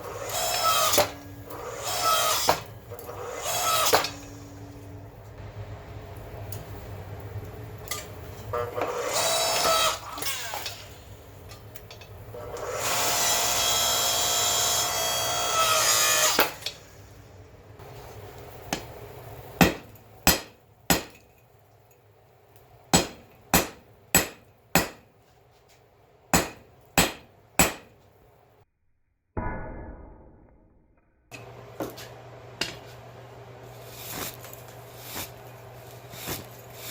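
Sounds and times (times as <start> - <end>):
electric power tool running: 8.8 - 10.9, 12.4 - 16.6
hammer tapping on metal: 22.9 - 25.1, 26.4 - 28.0.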